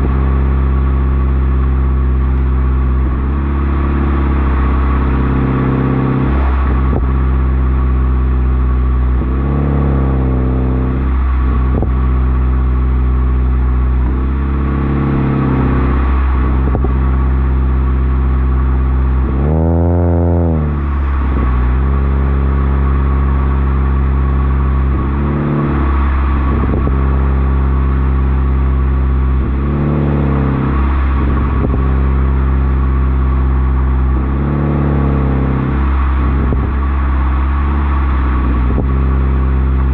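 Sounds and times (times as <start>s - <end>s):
car engine droning and revving: 0.0s - 39.9s.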